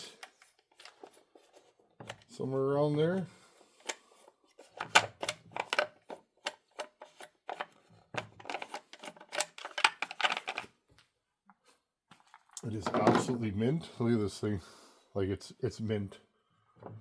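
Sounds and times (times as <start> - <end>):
chainsaw parts clicking and rattling: 8.4 - 10.7.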